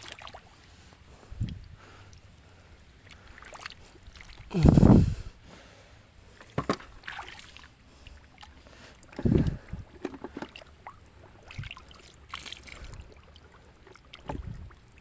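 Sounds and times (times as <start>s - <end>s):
splashing in shallow water: 6.4s - 14.8s.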